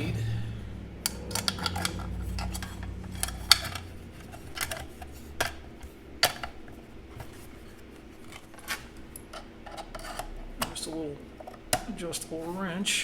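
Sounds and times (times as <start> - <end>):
low rumble: 0.0 - 7.8.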